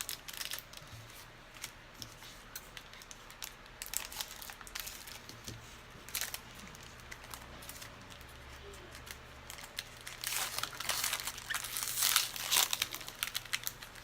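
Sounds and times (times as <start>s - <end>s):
pack wrappers crinkling: 0.0s - 14.0s.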